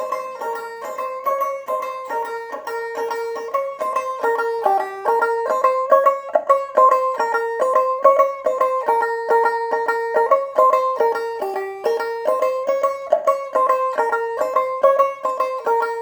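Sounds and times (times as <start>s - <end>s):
plucked string instrument melody: 0.0s - 16.0s.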